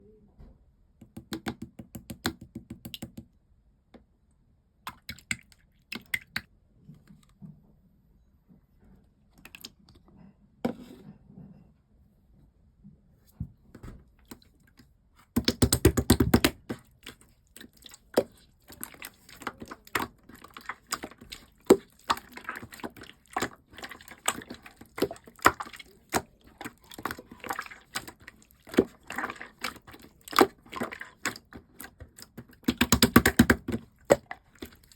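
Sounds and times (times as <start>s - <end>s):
slime squished by hand: 15.4s - 34.9s.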